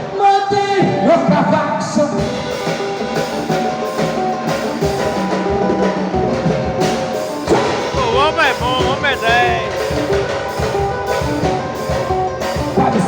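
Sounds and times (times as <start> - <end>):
samba percussion beat: 2.2 - 13.0
small guitar strumming: 7.5 - 10.4.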